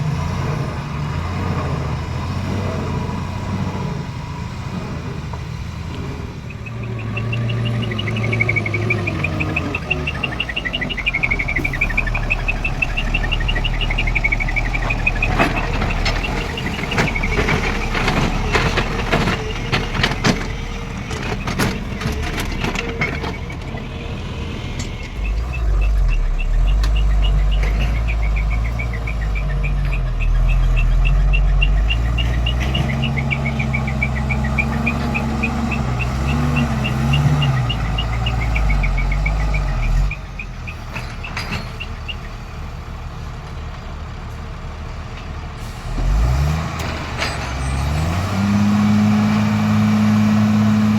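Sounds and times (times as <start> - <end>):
diesel engine running: 0.0 - 50.9
sharp clattering knocks: 5.2 - 42.4
high-pitched pulsing chirp: 6.5 - 20.4, 25.0 - 42.5.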